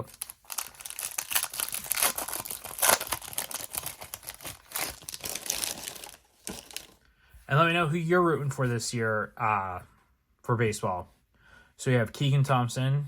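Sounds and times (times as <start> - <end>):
wrapper tearing and crinkling: 0.0 - 7.0.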